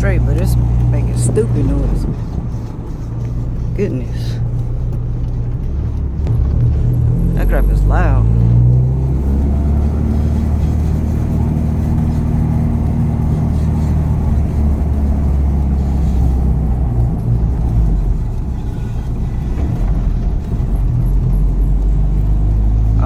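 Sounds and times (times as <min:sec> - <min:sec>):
car engine driving: 0:00.0 - 0:23.0
road noise: 0:00.0 - 0:23.0
wheel scraping noise: 0:00.0 - 0:23.0.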